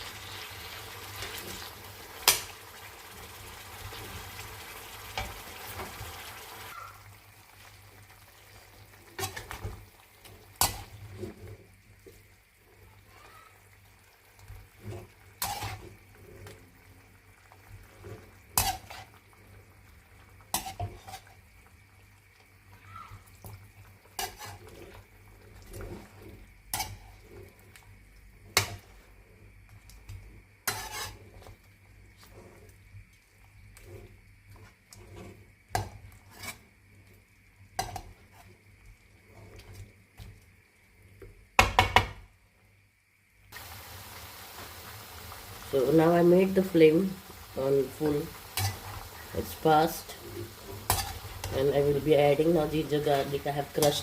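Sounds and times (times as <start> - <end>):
faint sizzling: 0.0 - 54.0
utensil scraping a pan: 9.0 - 11.7, 14.7 - 16.6, 17.6 - 19.2, 20.5 - 21.4, 24.1 - 27.6, 30.6 - 32.8, 33.6 - 36.7, 48.0 - 54.0.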